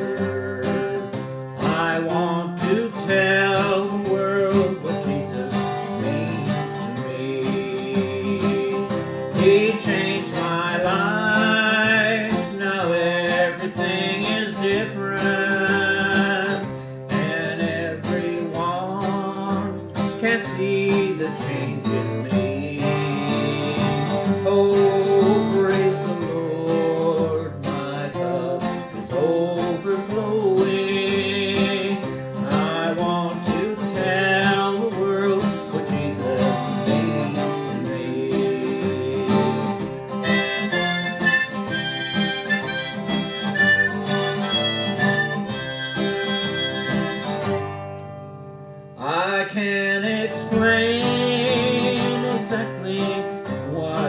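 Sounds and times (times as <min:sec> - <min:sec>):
strummed acoustic guitar: 0:00.0 - 0:54.0
harmonica playing: 0:39.5 - 0:47.8.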